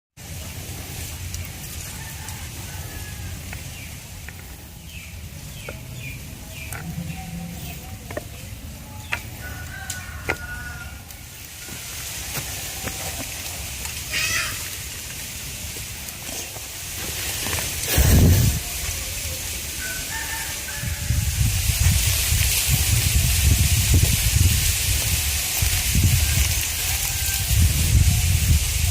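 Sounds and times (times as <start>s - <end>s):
chickens clucking: 0.4s - 21.4s.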